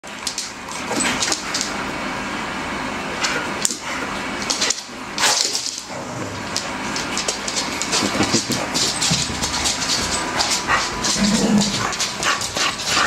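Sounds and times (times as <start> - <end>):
dog sounds: 6.4 - 13.0.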